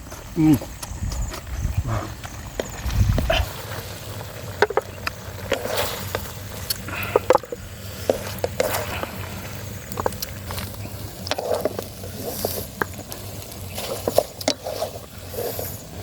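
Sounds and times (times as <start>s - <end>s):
wet chewing and mouth smacks: 6.6s - 15.0s.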